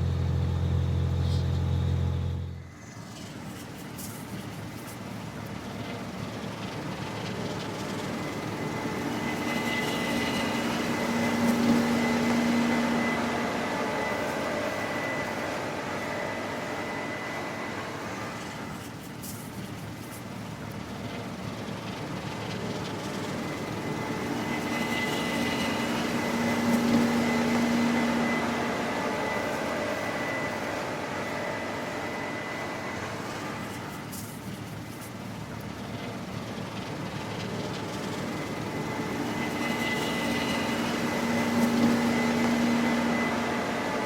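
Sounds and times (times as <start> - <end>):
combine harvester engine hum: 0.0 - 44.0
high whine: 6.7 - 20.3, 22.4 - 44.0.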